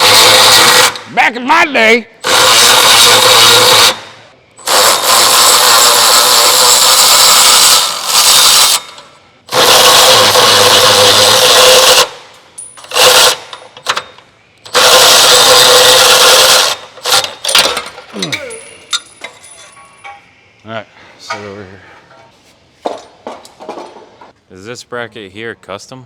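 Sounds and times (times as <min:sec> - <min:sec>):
power wrench bursts: 0:00.0 - 0:01.2, 0:02.2 - 0:18.8.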